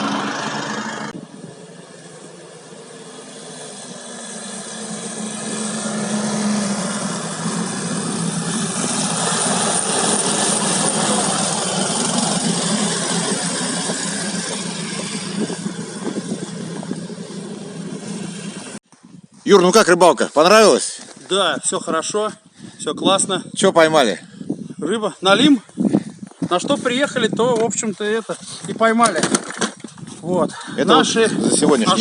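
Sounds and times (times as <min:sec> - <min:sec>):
small engine running: 0:00.0 - 0:18.8.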